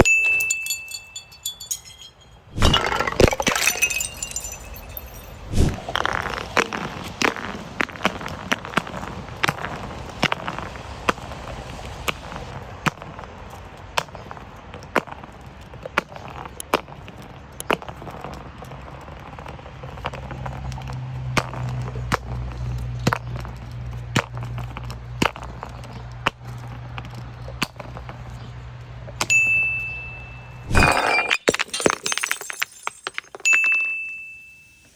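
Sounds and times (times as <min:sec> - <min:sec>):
glass bottles knocking down stairs: 0:00.0 - 0:05.8, 0:30.7 - 0:34.9.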